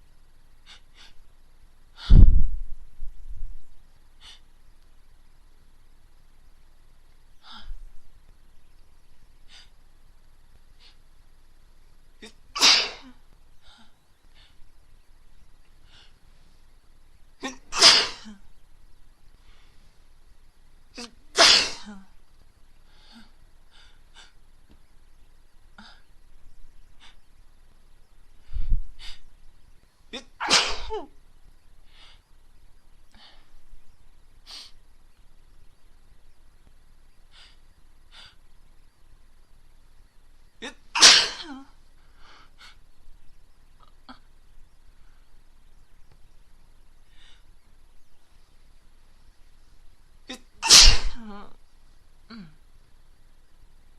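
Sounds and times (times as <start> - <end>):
woman sneezing: 30.2 - 31.1, 40.6 - 41.6, 50.3 - 51.5.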